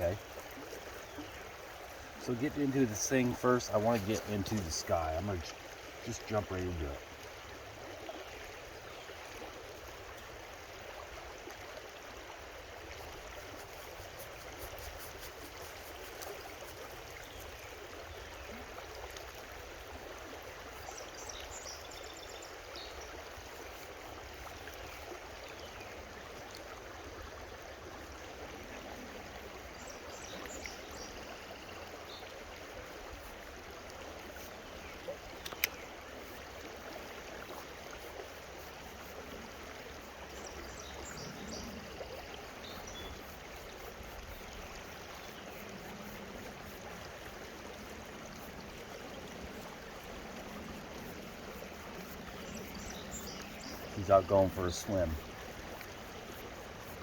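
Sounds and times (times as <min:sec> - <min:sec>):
creek water running: 0:00.0 - 0:57.0
sharp click: 0:35.4 - 0:35.8.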